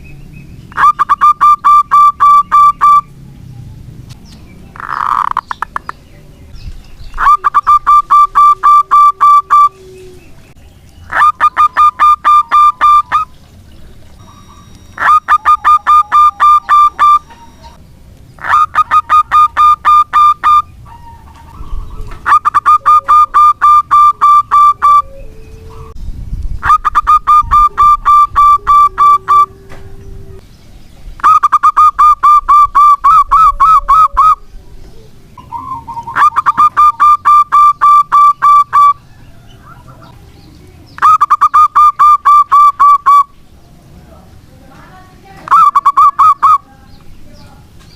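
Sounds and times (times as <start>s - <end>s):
dove cooing: 0.7s - 3.5s, 7.1s - 17.8s, 18.4s - 26.0s, 26.6s - 30.4s, 31.2s - 40.3s.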